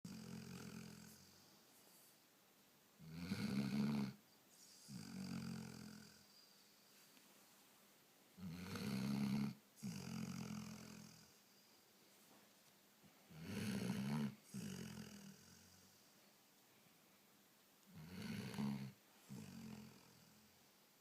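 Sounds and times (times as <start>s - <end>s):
person snoring: 0.1s - 1.4s, 3.0s - 4.2s, 4.8s - 6.3s, 8.4s - 11.4s, 13.3s - 16.0s, 17.9s - 20.4s.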